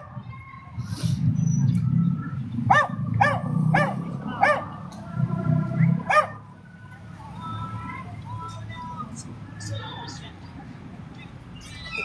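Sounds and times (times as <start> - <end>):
dog yelping: 2.7 - 4.7.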